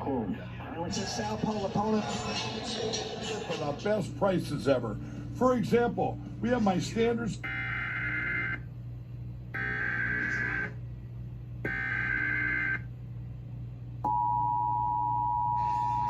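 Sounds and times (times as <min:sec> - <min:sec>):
buzzy data tones: 0:09.6 - 0:10.8.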